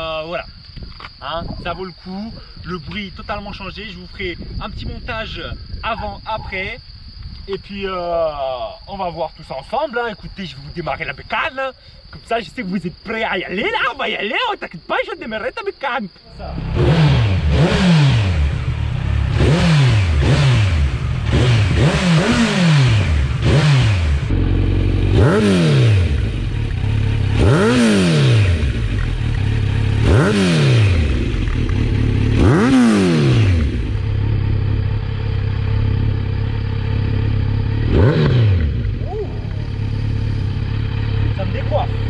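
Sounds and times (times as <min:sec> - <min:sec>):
motorcycle engine revving: 0:16.5 - 0:42.0.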